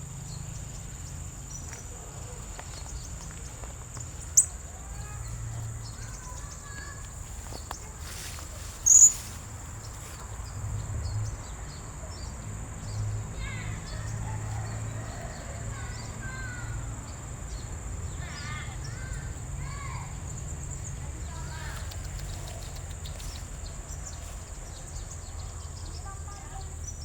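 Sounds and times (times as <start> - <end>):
faint twittering: 0.0 - 11.4
parrot sharp high chirps: 8.8 - 9.3.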